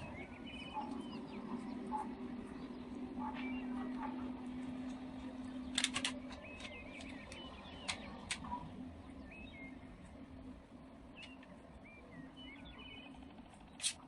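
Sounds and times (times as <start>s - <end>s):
small birds chirping: 0.0s - 14.0s
steady low hum: 0.0s - 14.0s
sharp clicks: 4.9s - 8.7s, 13.4s - 14.0s.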